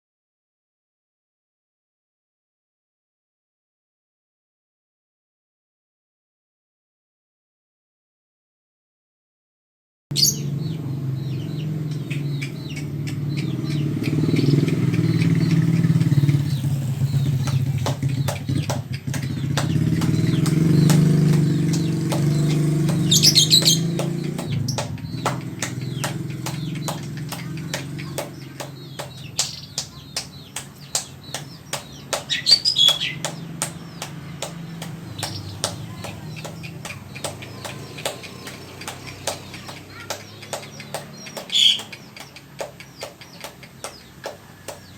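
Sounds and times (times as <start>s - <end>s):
low engine-like drone: 10.3s - 44.9s
bird hopping in cage: 11.4s - 44.9s
wing flaps: 13.8s - 44.9s.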